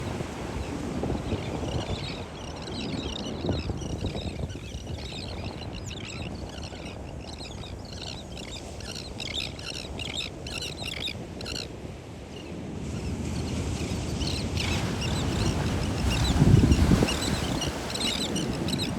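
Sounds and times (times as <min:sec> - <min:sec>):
terns calling: 0:14.3 - 0:18.9.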